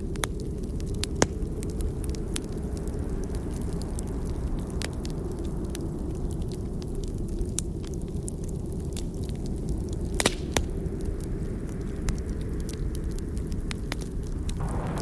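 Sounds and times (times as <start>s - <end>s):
burning logs crackling: 0.0s - 15.0s
sharp pops from fire: 0.0s - 15.0s
low rumble: 14.4s - 15.0s.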